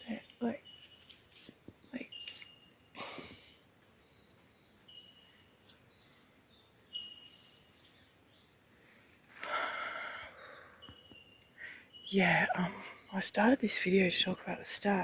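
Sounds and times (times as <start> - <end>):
soft rustles: 0.7 - 2.6, 3.8 - 6.5
birds whistling: 4.0 - 8.4, 9.4 - 13.1.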